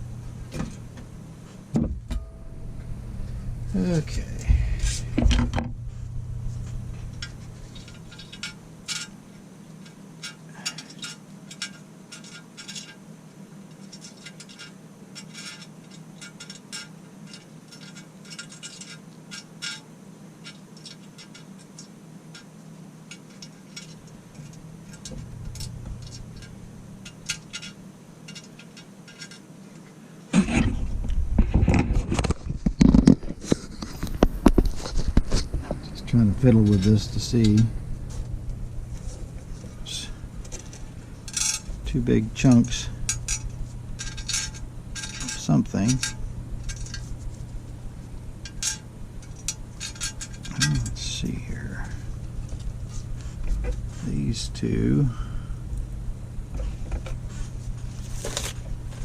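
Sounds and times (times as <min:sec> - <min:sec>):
steady low hum: 0:00.0 - 0:59.0
loud knocks and handling noise: 0:01.7 - 0:02.4, 0:04.4 - 0:05.8.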